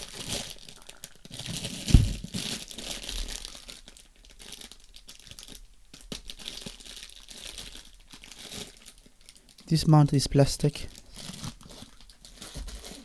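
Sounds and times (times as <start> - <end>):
plastic packaging crinkling: 0.0 - 13.0
dull thump: 1.9 - 2.3.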